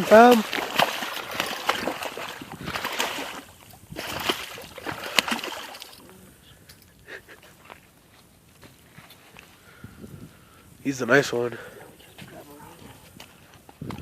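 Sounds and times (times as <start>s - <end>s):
water splashing and sloshing: 0.0s - 6.2s.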